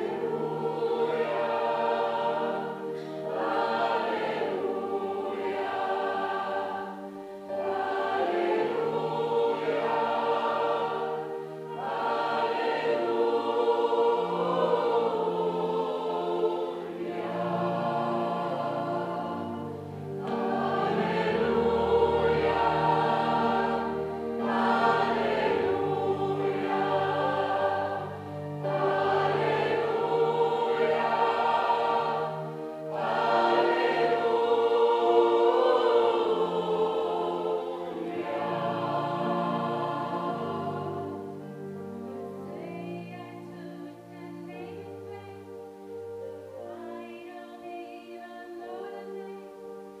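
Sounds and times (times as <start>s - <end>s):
gospel choir singing: 0.0s - 50.0s.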